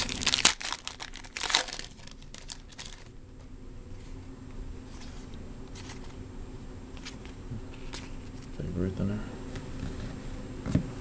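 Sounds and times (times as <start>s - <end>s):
plastic wrapper crinkling: 0.0s - 3.1s.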